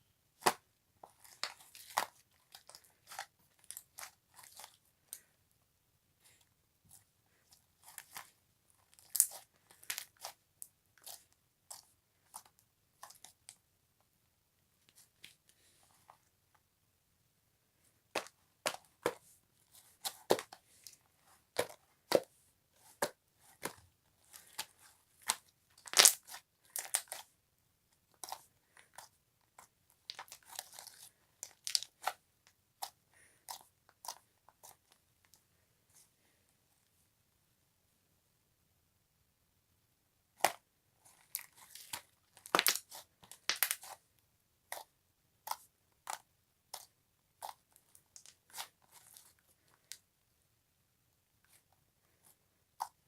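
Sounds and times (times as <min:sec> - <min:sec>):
crisp crunches and crackles: 0:23.6 - 0:27.3, 0:40.4 - 0:44.0.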